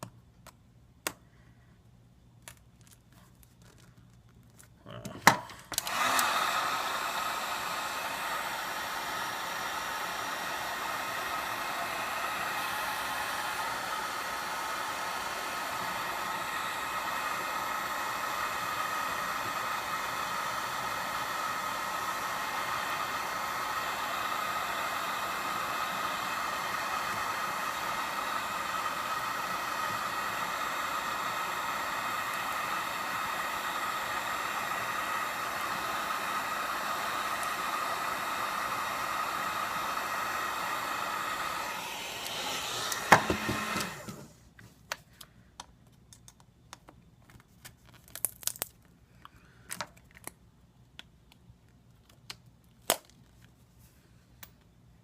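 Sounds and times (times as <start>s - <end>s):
hot-air gun blowing: 5.2s - 44.4s.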